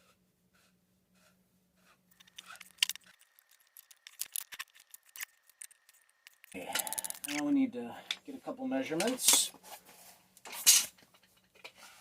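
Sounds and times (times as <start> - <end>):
small hard parts clicking and tapping: 2.1 - 7.5.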